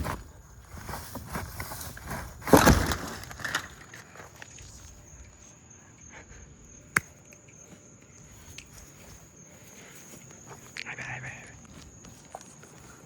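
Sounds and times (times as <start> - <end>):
soft scuffing: 0.0 - 2.6, 7.6 - 10.8, 11.6 - 13.0
sharp click: 6.9 - 7.6.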